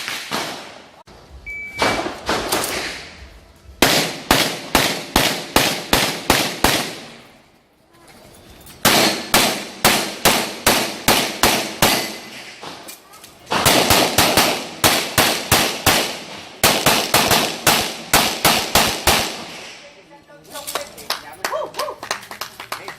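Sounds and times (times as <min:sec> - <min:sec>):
gunshots in quick succession: 0:00.0 - 0:01.0, 0:03.8 - 0:07.2, 0:08.8 - 0:12.8, 0:13.5 - 0:19.8.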